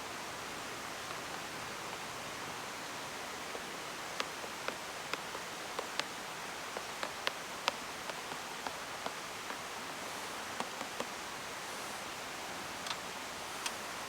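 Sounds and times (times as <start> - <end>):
wood fire crackling and popping: 0.6 - 11.2.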